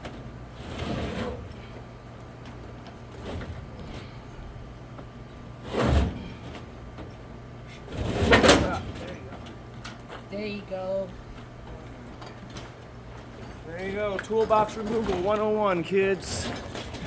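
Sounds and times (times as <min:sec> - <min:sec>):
steady low hum: 0:00.0 - 0:17.0
metal tool box scraping and sliding: 0:00.5 - 0:01.8, 0:05.6 - 0:06.7, 0:07.7 - 0:09.2, 0:16.1 - 0:17.0.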